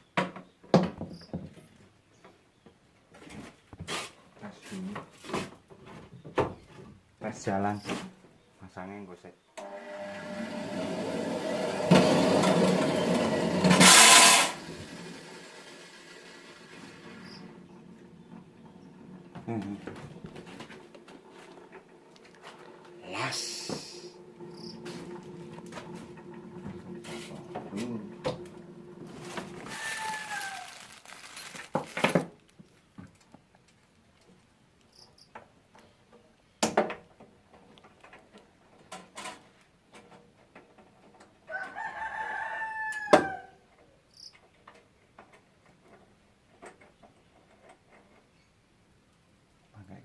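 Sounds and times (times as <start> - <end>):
steady hum: 21.8 - 29.7
rooster crowing: 29.6 - 31.1, 41.5 - 43.6.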